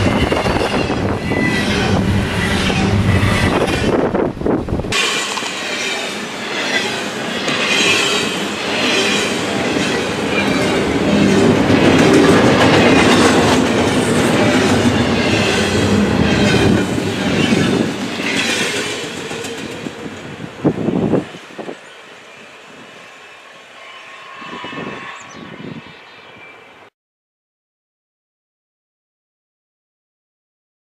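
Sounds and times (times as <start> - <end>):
wheel squeal: 0.0 - 4.0
freight train wheels clattering: 0.0 - 20.4.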